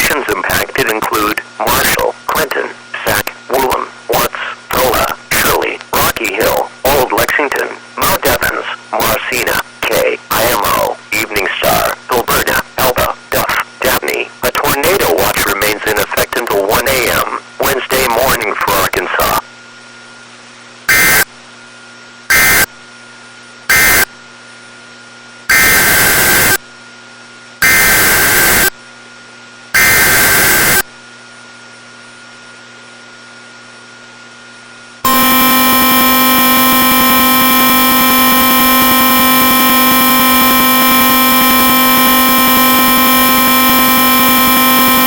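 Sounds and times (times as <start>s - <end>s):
faint hiss and hum: 0.0s - 38.5s
digital data bursts: 20.9s - 21.3s, 22.3s - 22.7s, 23.7s - 24.1s, 25.5s - 26.6s, 27.6s - 28.7s, 29.8s - 30.8s, 35.1s - 45.0s
buzzy attention tone: 35.0s - 45.0s.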